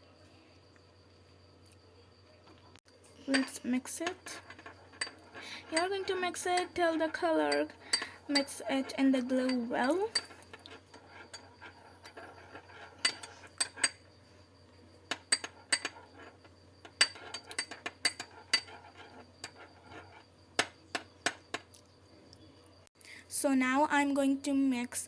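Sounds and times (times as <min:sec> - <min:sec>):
spoon clinking against a bowl: 0:03.3 - 0:14.0, 0:15.1 - 0:21.6.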